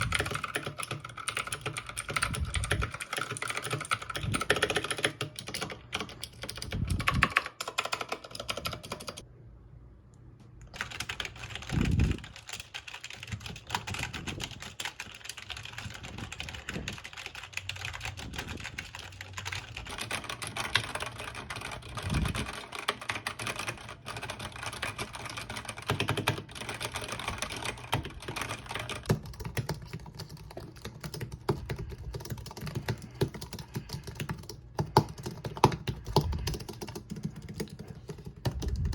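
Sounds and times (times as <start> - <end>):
fast typing on keyboard: 0.0 - 9.2, 10.7 - 38.9.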